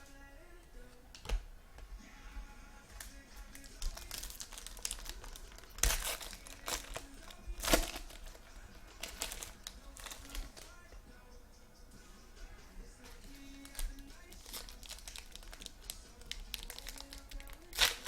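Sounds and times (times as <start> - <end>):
foil wrappers crinkling and tearing: 3.0 - 10.8, 13.1 - 18.0.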